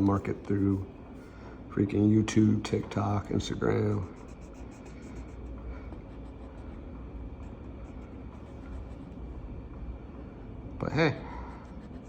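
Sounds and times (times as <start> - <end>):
low background hum: 0.0 - 12.0
colouring strokes scratching on paper: 3.8 - 9.2, 11.5 - 12.0.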